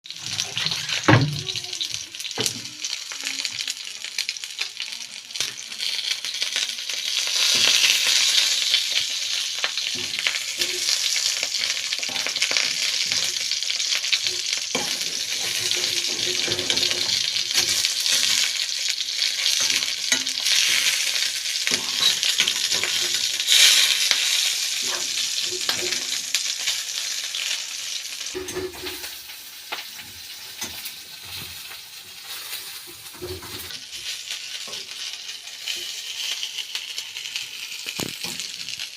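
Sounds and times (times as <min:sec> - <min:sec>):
sausages sizzling in a pan: 0:00.0 - 0:38.9
utensil scraping a pan: 0:19.4 - 0:26.0.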